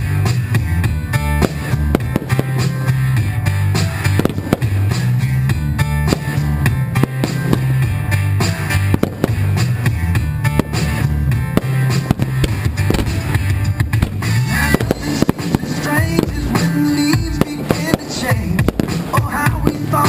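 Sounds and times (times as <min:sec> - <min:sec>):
rock music with drums and guitar: 0:00.0 - 0:20.0.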